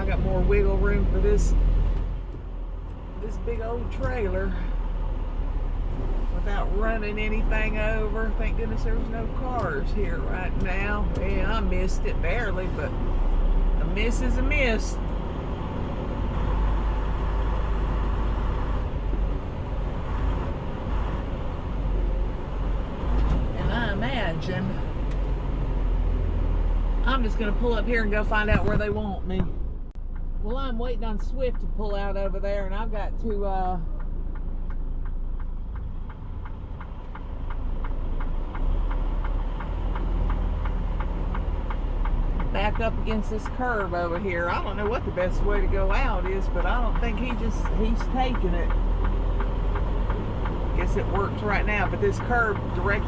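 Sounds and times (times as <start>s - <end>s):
diesel truck engine droning: 0.0s - 53.0s
road and cab noise: 0.0s - 53.0s
turn-signal relay ticking: 29.9s - 53.0s.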